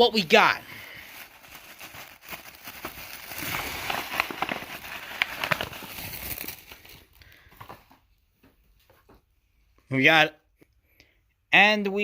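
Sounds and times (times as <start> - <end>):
wrapping paper crinkling: 0.1 - 7.6.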